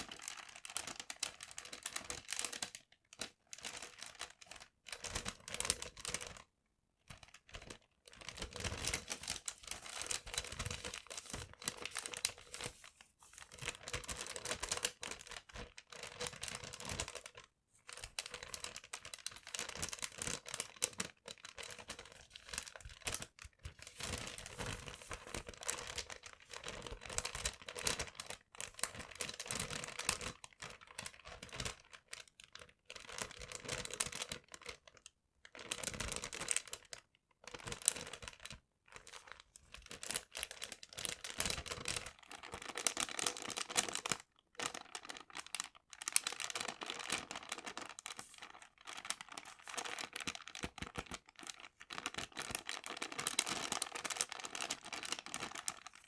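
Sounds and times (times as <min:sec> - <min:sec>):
paper crinkling and rustling: 0:07.6 - 0:32.3, 0:37.6 - 0:56.0.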